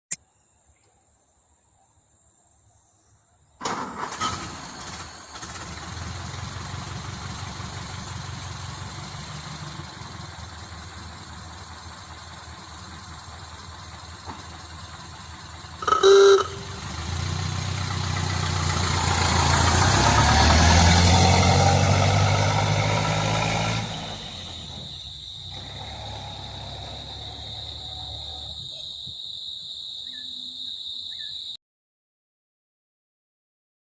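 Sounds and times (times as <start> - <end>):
car engine starting and idling: 3.6 - 28.8
engine revving: 3.7 - 28.6
car horn blast: 15.8 - 17.0.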